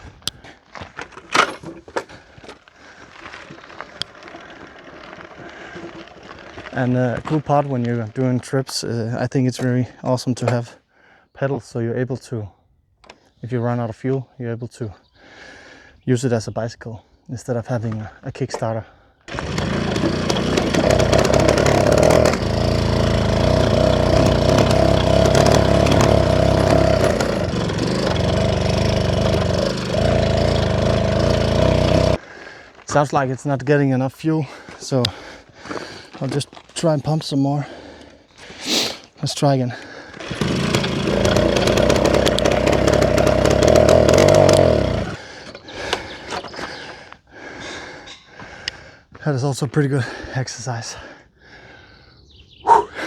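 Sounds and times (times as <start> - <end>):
moped engine running unevenly: 19.3 - 32.2, 40.1 - 45.2.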